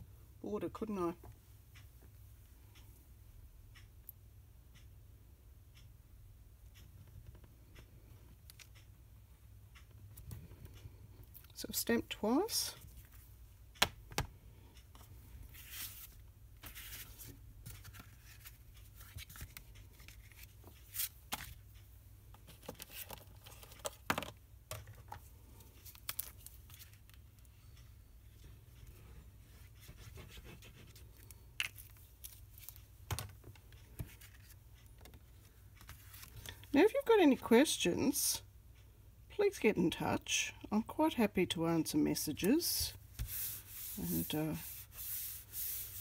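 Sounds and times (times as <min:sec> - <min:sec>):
paper and tools handled on desk: 0:15.6 - 0:21.6.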